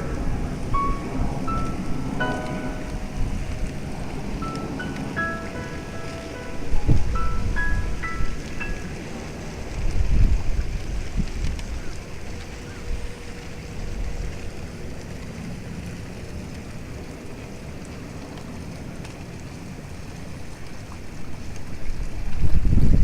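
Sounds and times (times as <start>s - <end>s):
wind on microphone: 0.0s - 14.8s, 21.6s - 23.0s
boat engine and water rumble: 0.0s - 23.0s.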